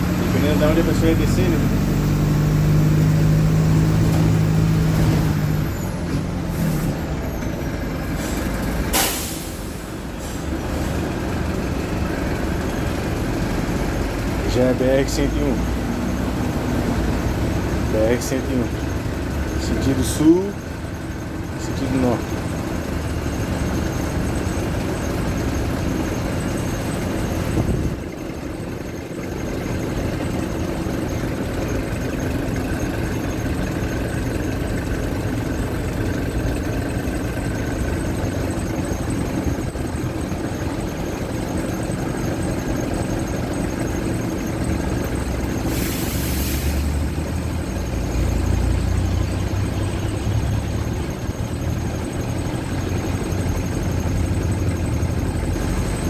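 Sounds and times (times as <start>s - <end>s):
bus diesel engine running: 0.0s - 56.0s
brief hiss: 8.9s - 9.8s.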